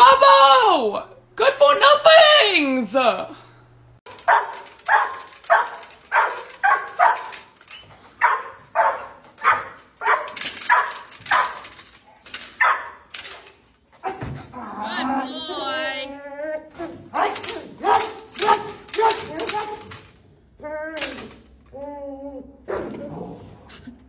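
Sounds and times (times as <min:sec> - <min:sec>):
dog barking: 0:04.1 - 0:07.4, 0:08.2 - 0:11.6, 0:12.6 - 0:13.0.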